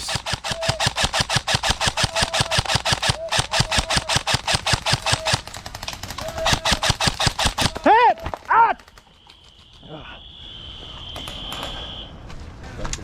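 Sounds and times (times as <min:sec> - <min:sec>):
airsoft gun firing full auto: 0:00.0 - 0:09.8.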